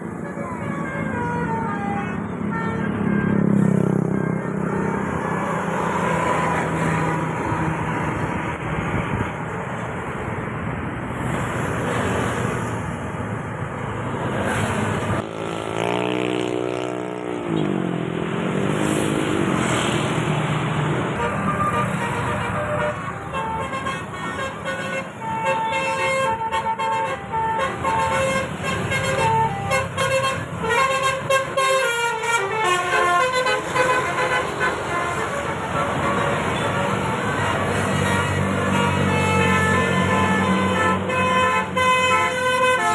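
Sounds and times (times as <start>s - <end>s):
road traffic noise: 0.0s - 42.9s
musical vehicle horn: 21.2s - 42.9s.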